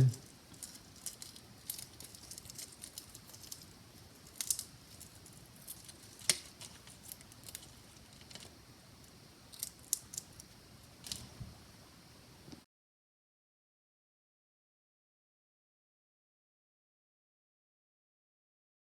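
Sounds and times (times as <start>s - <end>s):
eggshell peeling crackle: 0.0s - 8.6s, 9.5s - 11.3s.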